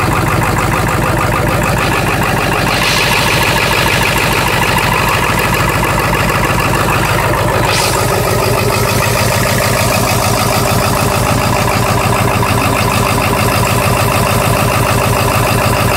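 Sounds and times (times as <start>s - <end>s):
diesel engine idling clatter: 0.0s - 15.9s.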